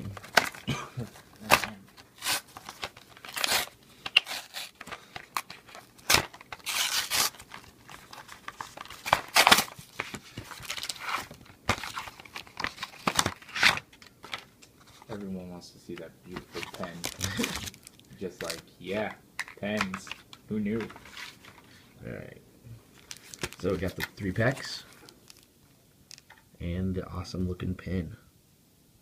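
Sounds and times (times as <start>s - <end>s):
packaging tearing and crinkling: 0.0s - 14.5s, 16.4s - 18.6s, 22.9s - 25.5s.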